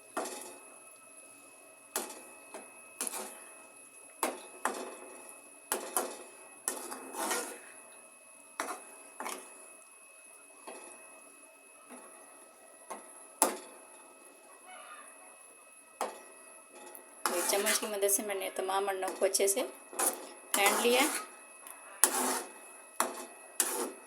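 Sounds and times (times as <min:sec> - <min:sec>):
spoon beating eggs in a pan: 0:02.0 - 0:03.4, 0:05.7 - 0:07.8, 0:16.0 - 0:18.0.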